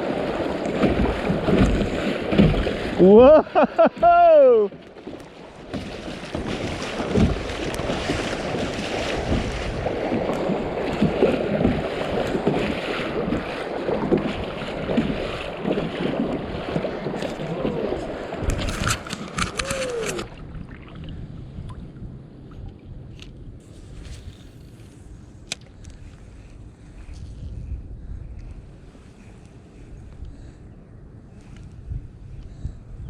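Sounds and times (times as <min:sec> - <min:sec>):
whitewater rushing and splashing: 0:00.0 - 0:21.0
quiet water flow: 0:00.0 - 0:33.0.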